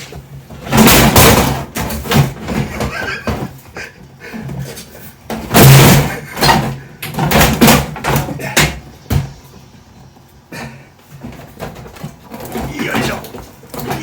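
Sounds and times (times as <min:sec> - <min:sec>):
plastic appliance thumps and knocks: 0:00.6 - 0:03.6, 0:05.3 - 0:09.3.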